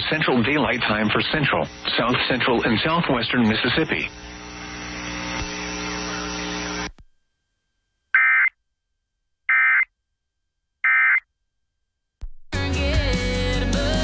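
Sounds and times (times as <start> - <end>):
broadcast hum and hiss: 0.0 - 7.3.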